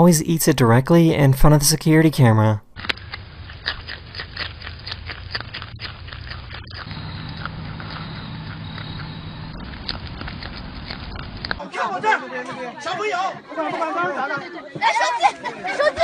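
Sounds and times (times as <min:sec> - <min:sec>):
animal chewing food: 0:02.8 - 0:11.6
low drone: 0:06.8 - 0:11.6
microphone hum: 0:06.8 - 0:11.6.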